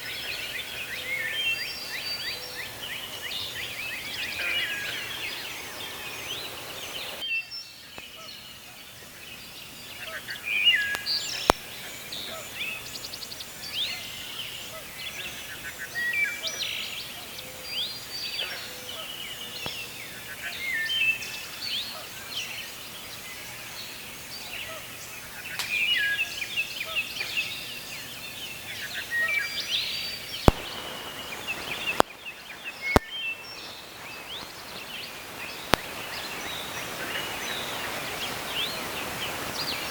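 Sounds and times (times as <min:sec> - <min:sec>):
birds singing: 0:00.0 - 0:39.9
sharp clicks: 0:30.4 - 0:37.7.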